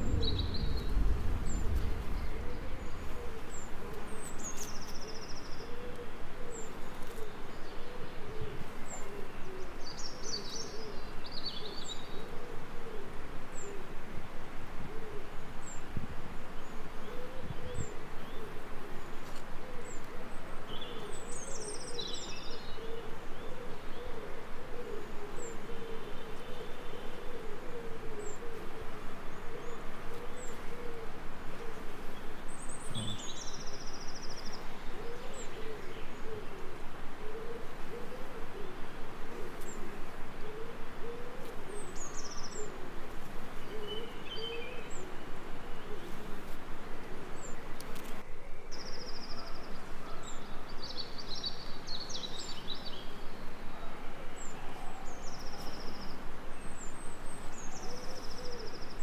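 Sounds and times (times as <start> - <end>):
small birds chirping and trilling: 0.0 - 12.3, 32.0 - 36.5
low wavering hoot-like call: 32.9 - 33.4.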